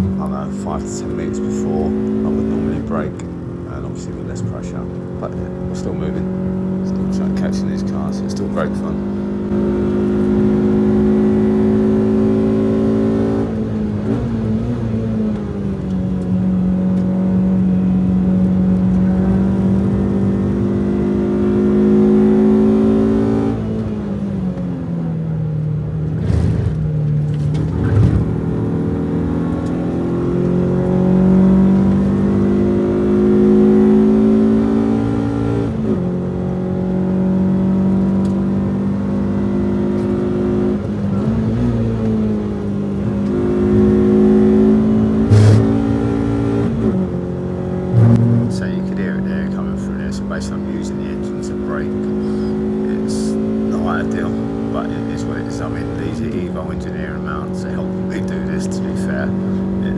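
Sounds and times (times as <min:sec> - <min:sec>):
car engine revving: 0:00.0 - 0:59.9
sharp knocks: 0:45.3 - 0:45.8.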